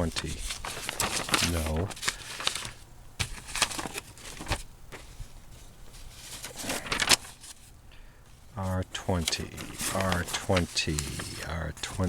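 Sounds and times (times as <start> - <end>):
paper rustling and crinkling: 0.0 - 12.0.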